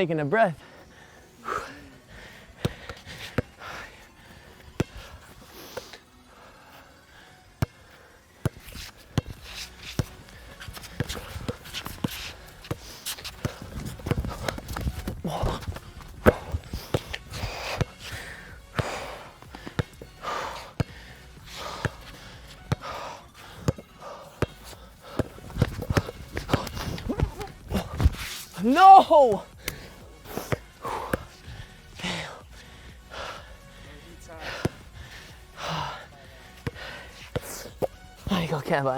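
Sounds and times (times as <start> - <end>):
heavy out-of-breath breathing: 0.6 - 28.6, 29.4 - 38.4
running footsteps: 8.5 - 38.7
basketball bouncing on court: 9.2 - 18.0, 18.8 - 20.1, 22.7 - 23.8, 24.4 - 28.2.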